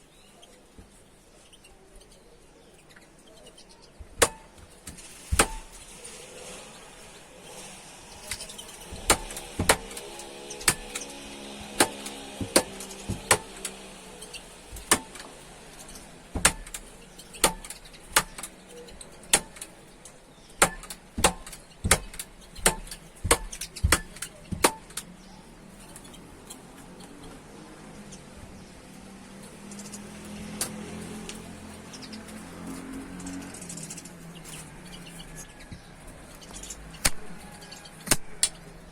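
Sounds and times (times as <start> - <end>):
sharp irregular clicks: 7.6 - 14.0, 36.4 - 38.7.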